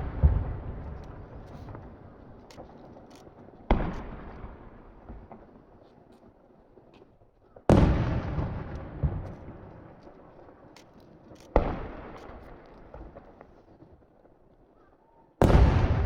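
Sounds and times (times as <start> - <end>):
firework shells booming: 0.0 - 5.8, 7.6 - 13.6, 15.4 - 16.0
faint firework crackles: 0.0 - 16.0.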